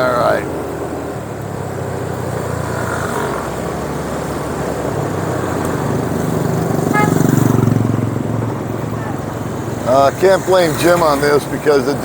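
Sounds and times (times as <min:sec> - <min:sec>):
road and wind noise: 0:00.0 - 0:12.0
motorbike engine running: 0:05.7 - 0:10.0.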